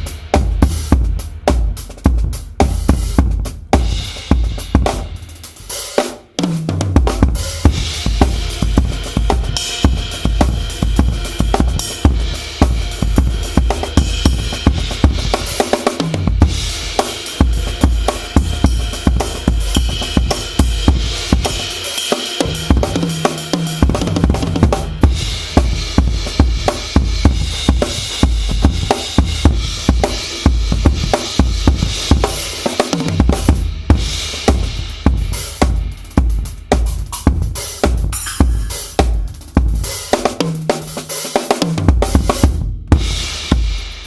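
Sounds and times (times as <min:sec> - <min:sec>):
drum kit groove: 0:00.0 - 0:44.0
ringing cymbals: 0:07.4 - 0:15.8, 0:16.4 - 0:23.9, 0:38.1 - 0:40.0.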